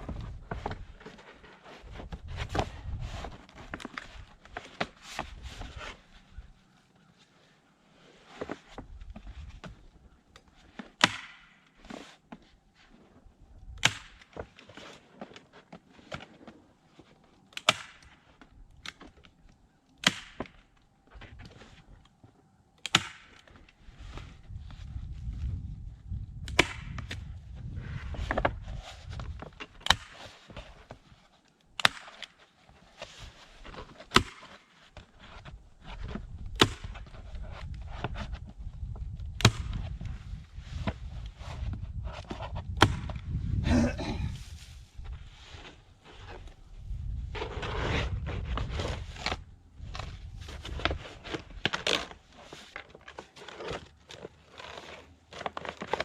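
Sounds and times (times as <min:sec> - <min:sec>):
paper rustling and clicking: 0:48.4 - 0:56.0.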